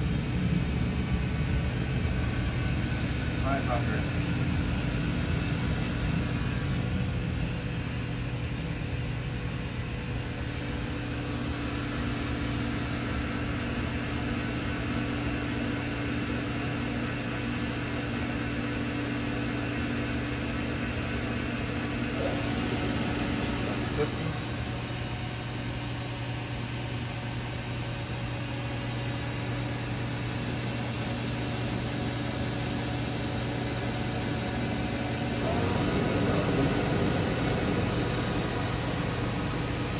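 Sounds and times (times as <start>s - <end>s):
machinery humming: 0.0s - 39.9s.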